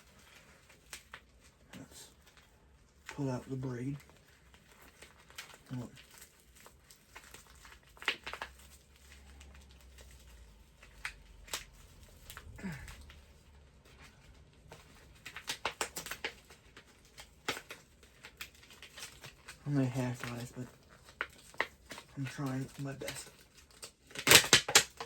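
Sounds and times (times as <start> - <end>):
packaging crinkling and scraping: 0.0 - 25.0.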